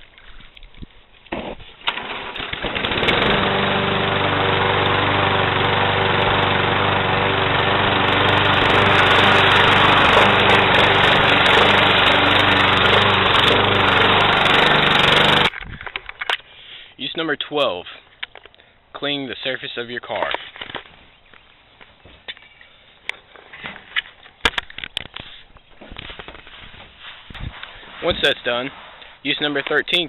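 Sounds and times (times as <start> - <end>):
lawn mower engine running: 1.8 - 15.6.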